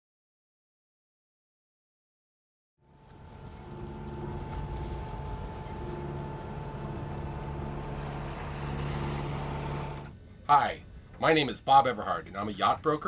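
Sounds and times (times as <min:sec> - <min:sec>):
steady low hum: 0:02.8 - 0:13.0
wind and water rushing: 0:02.9 - 0:10.0.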